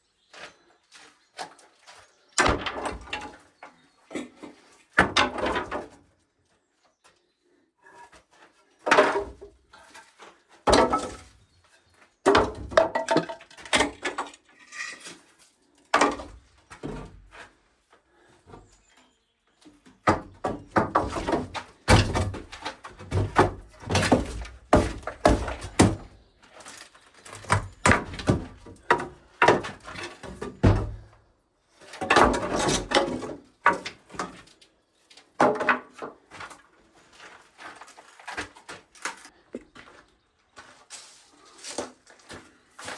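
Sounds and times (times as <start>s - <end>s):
thuds and knocks from building work: 2.4s - 3.5s, 5.0s - 6.0s, 10.6s - 11.4s, 12.2s - 14.3s, 15.9s - 17.4s, 19.9s - 26.2s, 27.2s - 31.2s, 32.0s - 34.5s, 35.4s - 36.5s.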